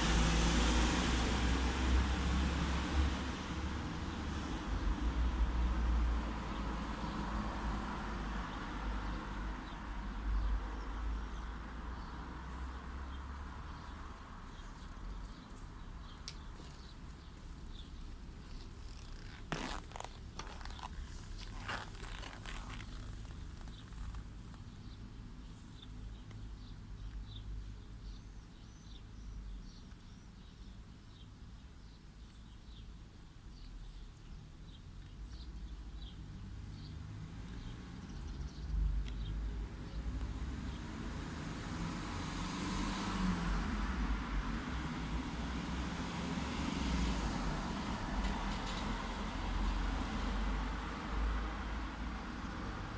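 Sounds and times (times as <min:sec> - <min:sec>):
vehicle approaching: 0:00.0 - 0:16.9, 0:36.1 - 0:52.9
distant traffic rumble: 0:00.0 - 0:28.3, 0:33.7 - 0:52.9
small birds chirping: 0:08.4 - 0:41.2.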